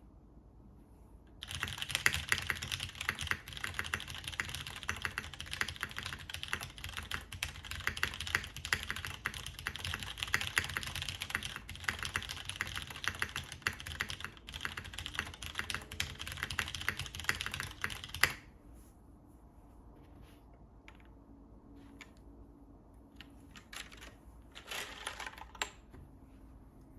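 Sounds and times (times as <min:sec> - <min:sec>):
mechanical keyboard typing: 0:01.4 - 0:18.5.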